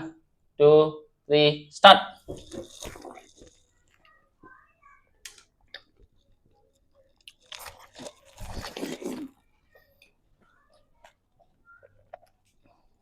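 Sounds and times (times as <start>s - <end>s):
wet crunching of watermelon: 2.3s - 3.8s, 7.2s - 9.4s.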